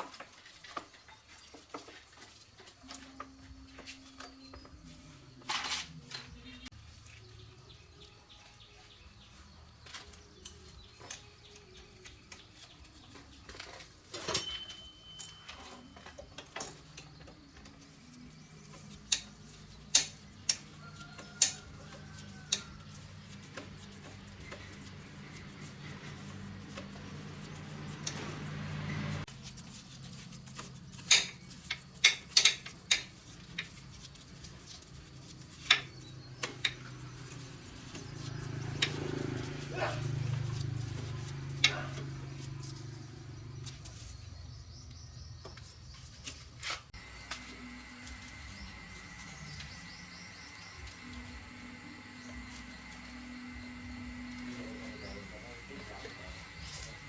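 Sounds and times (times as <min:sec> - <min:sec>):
metal tools clinking: 0:13.6 - 0:17.1.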